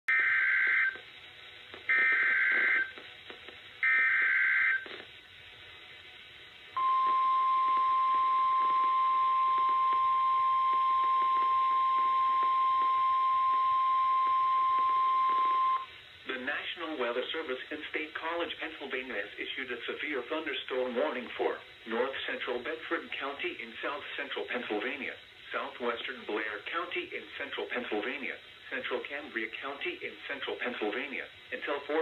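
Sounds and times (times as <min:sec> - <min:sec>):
steady weather radio tone: 0:00.1 - 0:01.1, 0:01.8 - 0:03.0, 0:06.8 - 0:32.0
screeching digital data bursts: 0:01.9 - 0:02.9.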